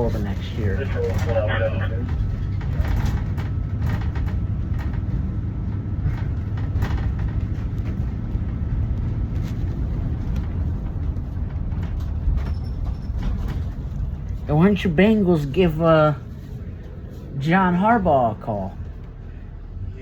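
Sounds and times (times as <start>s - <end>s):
bus engine and road rumble: 0.0s - 20.0s
faint clicks and rattles: 2.0s - 14.5s.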